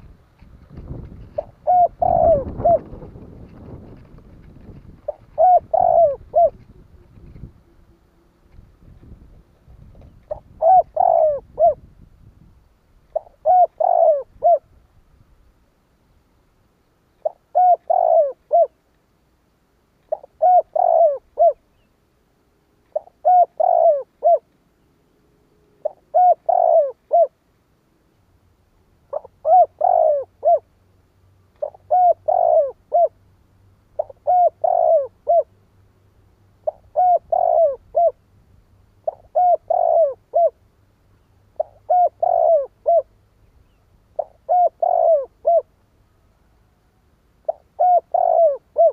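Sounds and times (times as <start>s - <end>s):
dove cooing: 0.8s - 12.0s, 13.1s - 14.8s, 17.2s - 18.8s, 20.1s - 21.9s, 22.9s - 24.5s, 25.8s - 27.4s, 29.1s - 30.7s, 31.6s - 33.2s, 34.0s - 35.6s, 36.6s - 38.2s, 39.0s - 40.6s, 41.5s - 43.2s, 44.1s - 45.7s, 47.4s - 48.9s.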